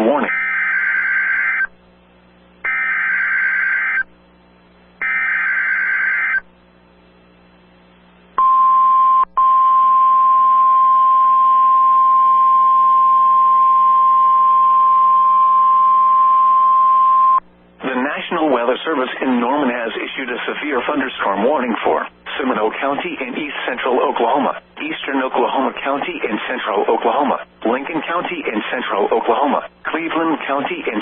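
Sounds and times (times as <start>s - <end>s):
steady warning alarm tone: 0.0s - 1.7s, 2.7s - 4.1s, 5.0s - 6.4s.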